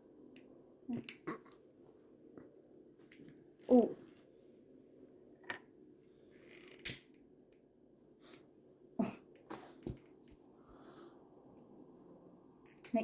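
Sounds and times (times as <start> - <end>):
faint room hum: 0.0 - 13.0
small objects clicking: 6.4 - 7.2.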